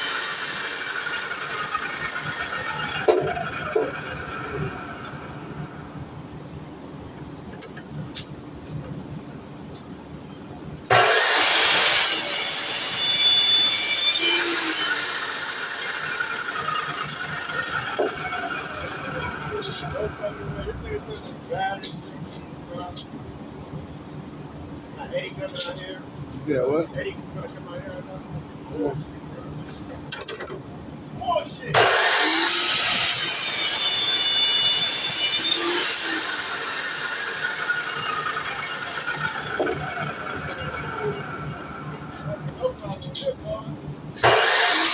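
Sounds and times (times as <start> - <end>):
miter saw cutting: 0.0 - 5.9, 10.9 - 21.2, 31.8 - 42.7, 44.2 - 44.9.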